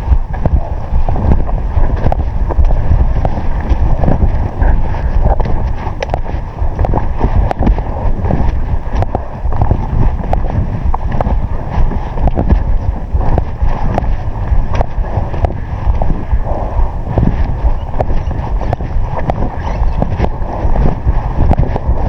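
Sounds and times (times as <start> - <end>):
wind buffeting microphone: 0.0 - 22.0
small knocks and clicks: 1.3 - 11.4.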